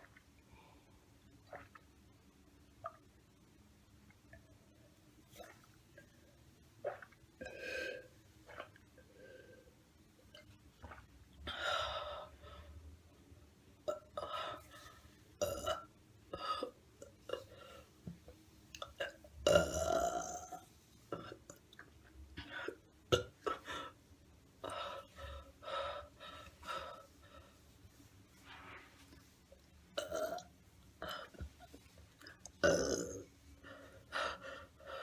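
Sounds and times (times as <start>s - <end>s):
woman burping: 19.0s - 20.6s, 32.6s - 33.3s.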